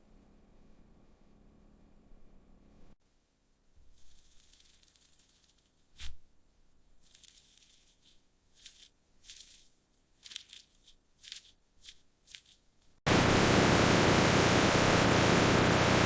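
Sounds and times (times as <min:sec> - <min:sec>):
faint crinkling rustles: 0:03.7 - 0:13.0
loud steady rushing noise: 0:13.1 - 0:16.0.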